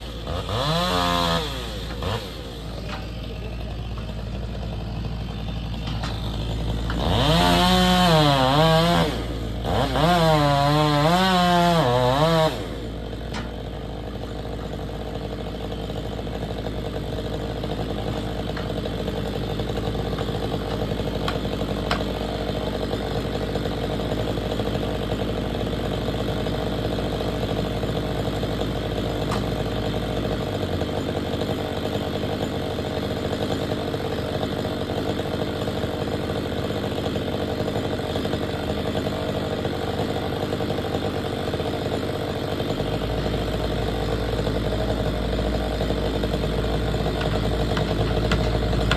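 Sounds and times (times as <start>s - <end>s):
chainsaw revving and idling: 0.0s - 48.9s.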